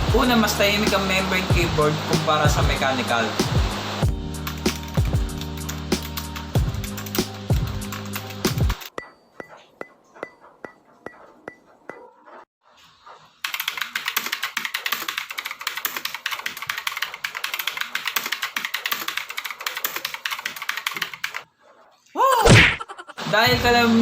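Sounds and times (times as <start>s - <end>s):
typing on computer keyboard: 13.4s - 21.4s.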